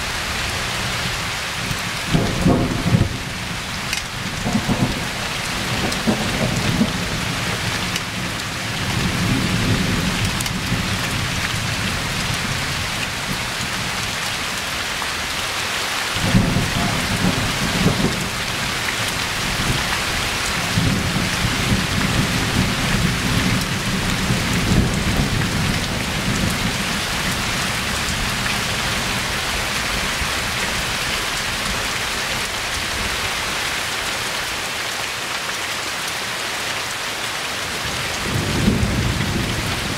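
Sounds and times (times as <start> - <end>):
steady rain: 0.0 - 39.9
rolling thunder: 2.1 - 12.1, 16.2 - 28.4, 38.2 - 39.9.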